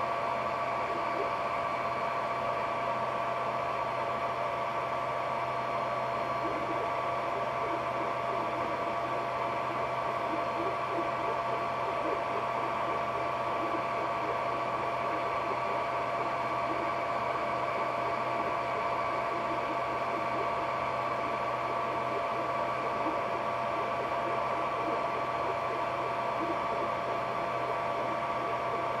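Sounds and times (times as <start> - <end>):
fan noise: 0.0 - 29.0
low hum: 5.9 - 29.0.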